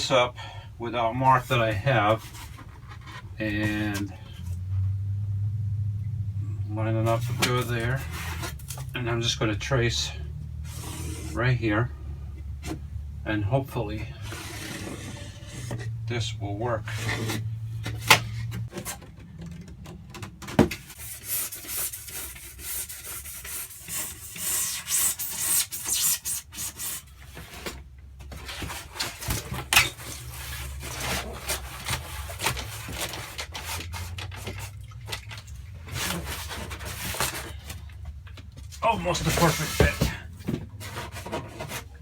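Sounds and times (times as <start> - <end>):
rubbing on foam board: 7.1 - 9.0, 10.7 - 11.5, 20.8 - 34.8, 35.8 - 37.7, 38.8 - 42.0.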